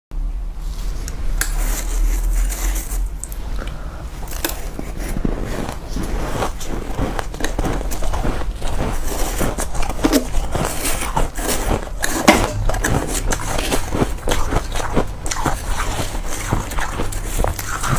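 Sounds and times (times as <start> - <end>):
steady low hum: 0.1 - 17.9
frost crunching when chewed: 4.2 - 17.9.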